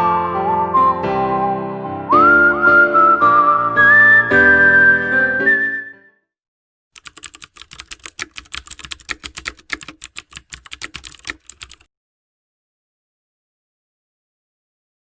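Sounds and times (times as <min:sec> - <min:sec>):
keyboard typing: 0:07.0 - 0:11.9.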